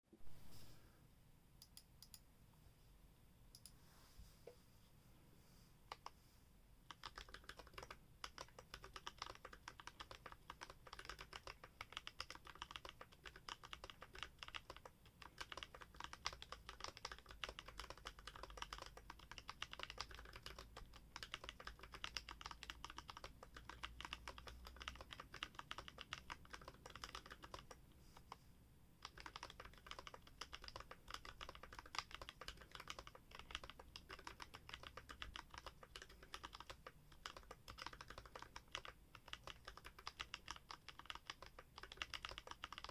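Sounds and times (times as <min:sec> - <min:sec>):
fast typing on mechanical keyboard: 0:06.9 - 0:28.3, 0:29.0 - 0:42.9.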